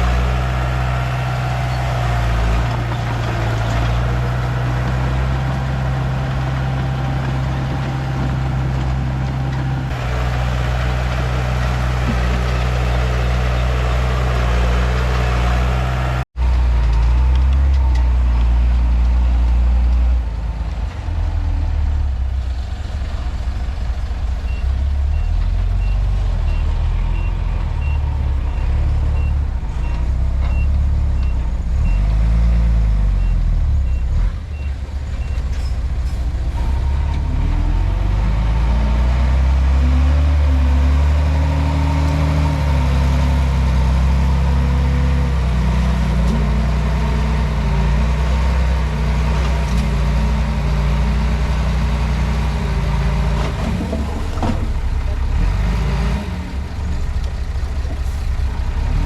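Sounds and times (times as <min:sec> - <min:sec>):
bulldozer diesel engine: 0:00.0 - 0:59.0
reversing alarm beeping: 0:24.4 - 0:32.1.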